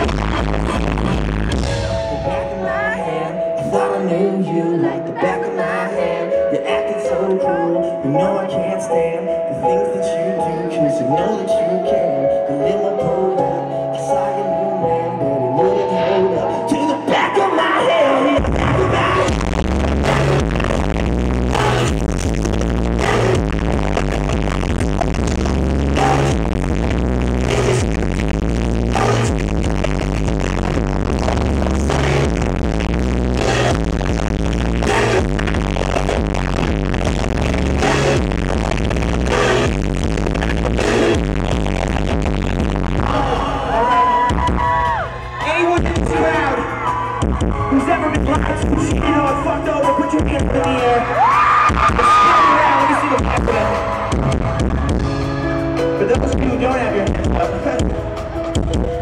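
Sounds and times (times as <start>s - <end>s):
live band playing loud music: 0.0s - 4.4s, 15.6s - 26.8s, 28.9s - 59.0s
sung or synth melody: 0.0s - 50.8s.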